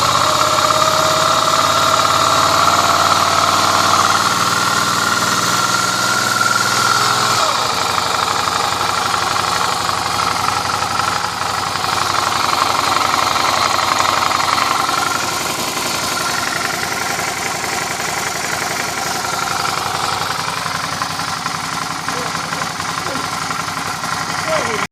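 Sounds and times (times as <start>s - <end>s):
motorcycle engine idling: 0.0s - 24.9s.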